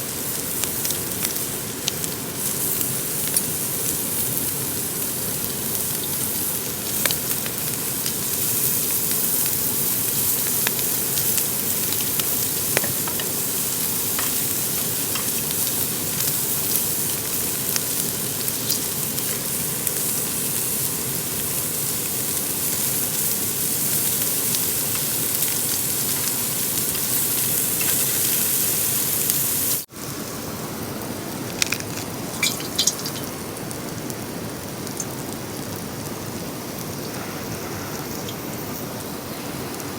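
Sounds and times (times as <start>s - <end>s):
meat sizzling on a grill: 0.0s - 39.9s
steady rain: 29.6s - 39.9s
water drips: 32.0s - 33.7s.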